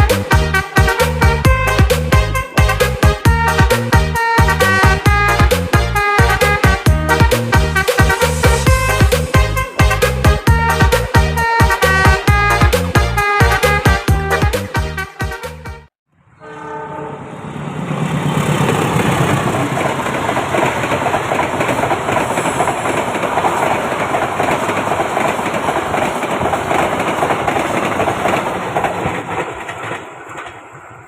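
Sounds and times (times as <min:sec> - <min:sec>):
train rolling on rails: 0:00.0 - 0:13.9, 0:16.2 - 0:31.0
train horn: 0:00.0 - 0:15.4, 0:16.2 - 0:17.6.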